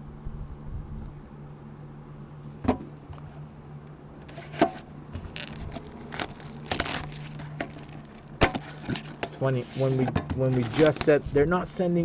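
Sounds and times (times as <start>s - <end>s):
steady low hum: 0.0s - 12.0s
packaging rustling and clicks: 4.4s - 9.4s, 10.5s - 11.2s.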